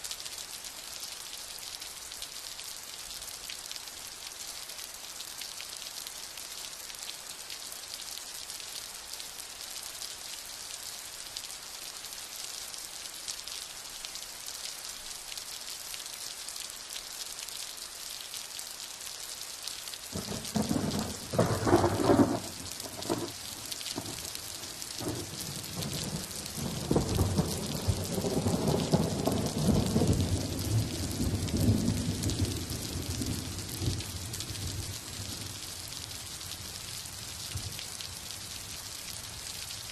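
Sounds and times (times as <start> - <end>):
steady rain hissing: 0.0 - 39.9
thunder rumbling: 20.1 - 33.4.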